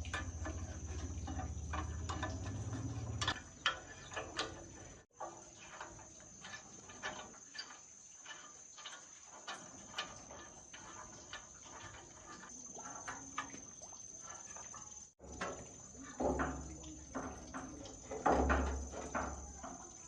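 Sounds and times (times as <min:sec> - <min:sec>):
hand tools tapping metal: 0:00.0 - 0:05.0, 0:15.2 - 0:20.0.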